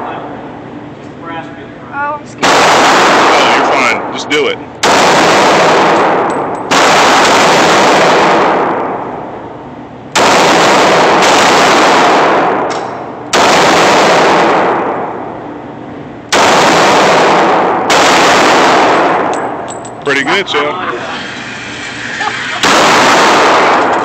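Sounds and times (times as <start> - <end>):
pistol shots: 2.4 - 4.0, 4.8 - 9.1, 10.1 - 15.3, 16.3 - 19.8, 22.6 - 24.0.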